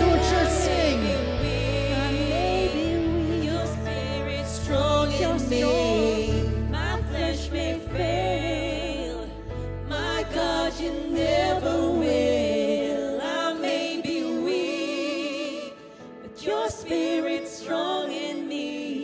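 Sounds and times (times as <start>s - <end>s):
live band playing: 0.0s - 5.5s
low bass: 0.0s - 12.6s
people singing worship music: 0.0s - 19.0s.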